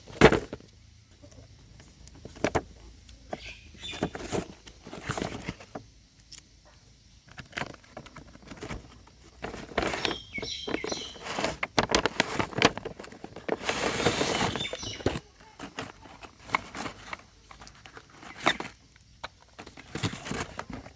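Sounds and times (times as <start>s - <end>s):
crinkly packaging rustling: 3.3s - 5.8s, 7.3s - 20.9s.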